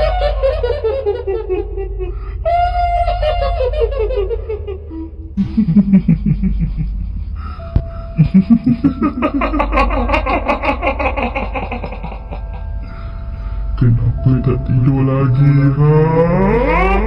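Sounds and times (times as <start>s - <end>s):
woman cackling laughter: 0.0s - 2.1s, 2.8s - 7.5s, 8.2s - 12.8s
low drone: 0.0s - 17.0s.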